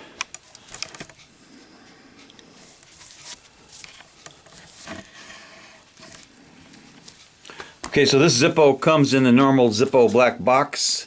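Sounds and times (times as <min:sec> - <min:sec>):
soft rubbing: 0:01.5 - 0:07.4.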